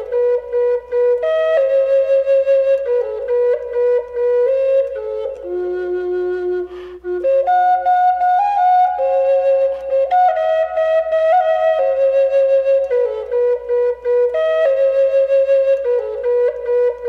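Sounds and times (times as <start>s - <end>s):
bamboo flute melody: 0.0s - 17.0s
short breath: 6.7s - 7.0s.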